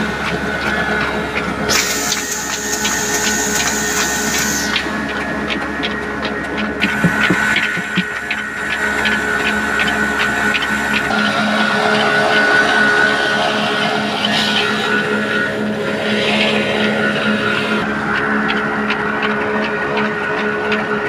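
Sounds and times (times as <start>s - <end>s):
light regular ticks: 0.0s - 11.2s, 16.4s - 21.0s
diesel engine running: 0.0s - 21.0s
flour mill whine: 0.0s - 21.0s.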